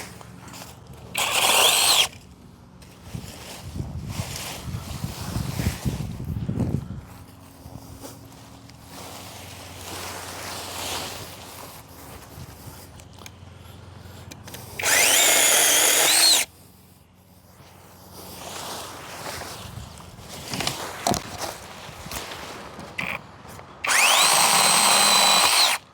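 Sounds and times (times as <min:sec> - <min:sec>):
branches rustling: 0:00.0 - 0:16.4, 0:17.2 - 0:25.8
cordless chainsaw motor whine: 0:00.5 - 0:02.4, 0:12.7 - 0:16.5, 0:23.0 - 0:23.2, 0:23.8 - 0:25.9.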